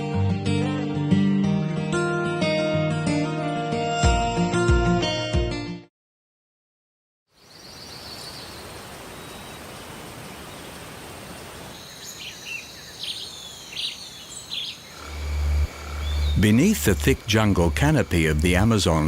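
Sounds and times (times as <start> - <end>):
birds chirping: 7.3 - 19.0
rainforest hiss: 7.4 - 19.0
high-pitched insect tones: 11.8 - 19.0.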